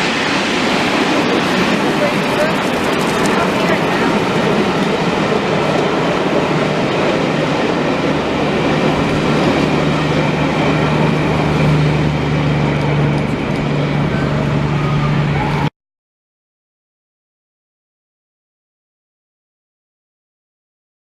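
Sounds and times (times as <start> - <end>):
train wheels rumbling on rail: 0.0 - 15.6
low hum: 0.0 - 15.7.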